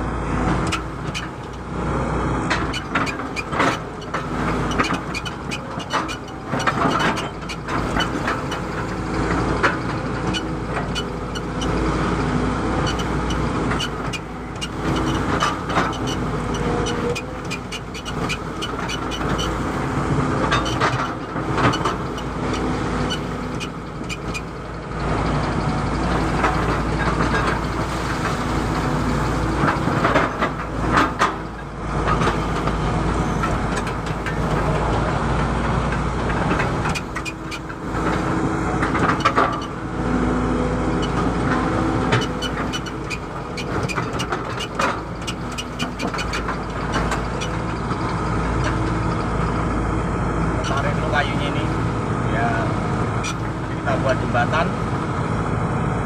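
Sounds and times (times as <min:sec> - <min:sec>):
excavator diesel engine running: 0:00.0 - 0:56.0
knocks and clanks: 0:02.4 - 0:11.8, 0:12.8 - 0:39.8, 0:40.9 - 0:49.3.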